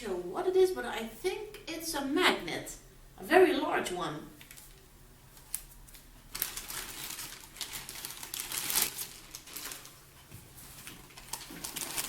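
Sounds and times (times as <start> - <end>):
packaging crinkling and rustling: 4.4 - 12.0.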